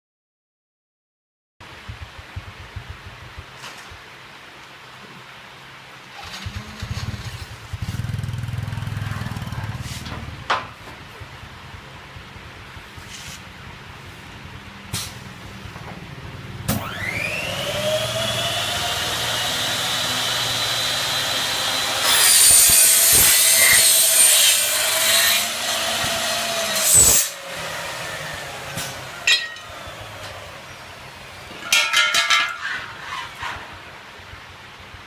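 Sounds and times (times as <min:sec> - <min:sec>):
cutting saw motor whine: 0:16.7 - 0:30.8
saw blade cutting aluminium: 0:16.7 - 0:33.7
rattling knocks: 0:31.5 - 0:32.9.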